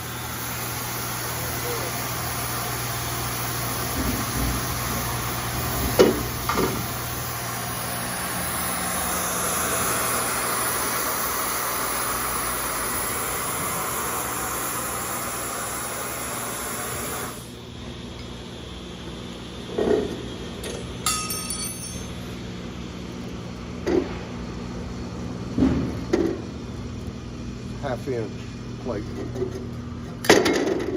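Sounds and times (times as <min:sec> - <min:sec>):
plasma torch hissing: 0:00.0 - 0:07.1, 0:07.7 - 0:17.6.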